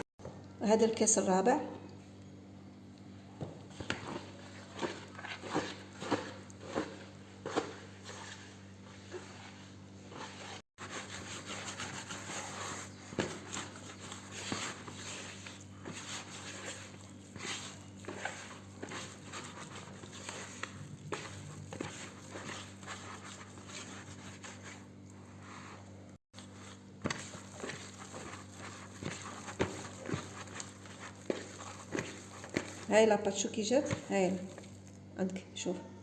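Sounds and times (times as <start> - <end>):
dough being mixed in bowl: 3.3 - 35.0.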